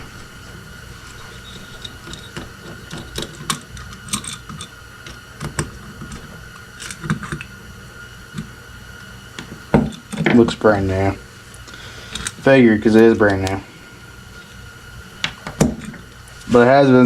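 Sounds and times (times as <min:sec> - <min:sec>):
small metal parts handled: 0:01.0 - 0:07.4, 0:12.1 - 0:12.5.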